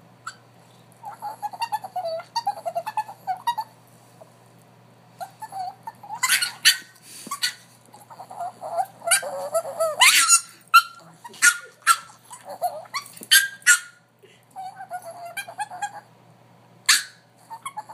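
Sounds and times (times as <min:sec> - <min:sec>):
dog crying high-pitched: 0:01.0 - 0:03.7, 0:05.2 - 0:14.0, 0:14.6 - 0:16.1, 0:16.9 - 0:17.9.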